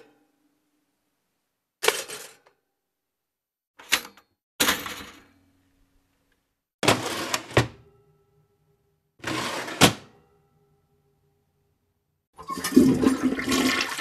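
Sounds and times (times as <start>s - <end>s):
toilet flushing: 12.4s - 14.0s.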